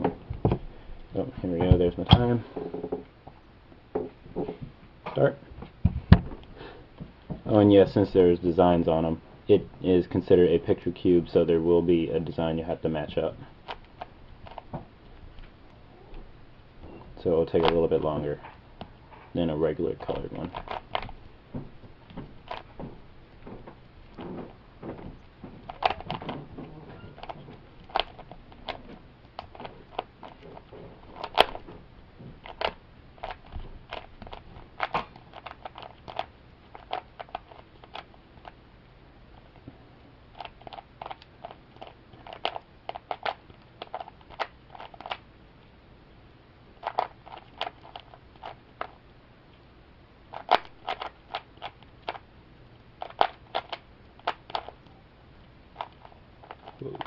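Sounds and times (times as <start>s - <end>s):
puzzle cube clicking as turned: 20.0s - 21.1s, 25.7s - 26.4s, 27.1s - 31.7s, 32.4s - 38.6s, 40.4s - 45.2s, 46.8s - 49.0s, 50.3s - 52.2s, 53.0s - 54.8s.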